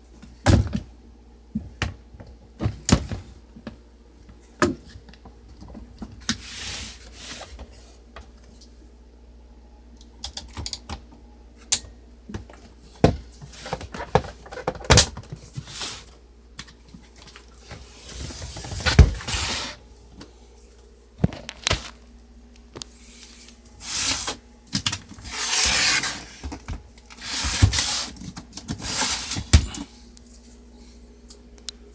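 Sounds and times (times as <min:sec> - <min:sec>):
typewriter rubbing and sliding: 0:23.8 - 0:24.4, 0:25.2 - 0:26.4, 0:27.2 - 0:28.2, 0:28.8 - 0:29.4.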